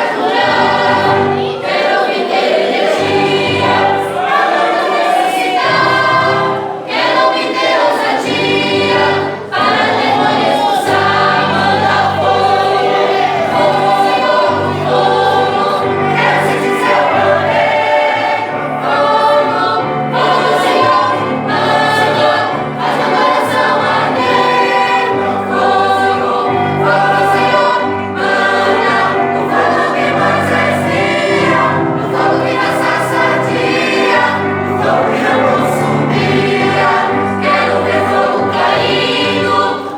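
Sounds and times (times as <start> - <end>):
choir singing a hymn: 0.0 - 39.9
musical accompaniment with bass: 8.3 - 39.9.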